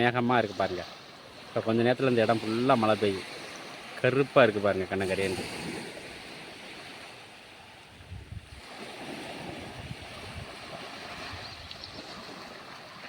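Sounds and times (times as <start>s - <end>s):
sea water lapping: 0.0s - 13.0s
wind buffeting microphone: 7.9s - 13.0s.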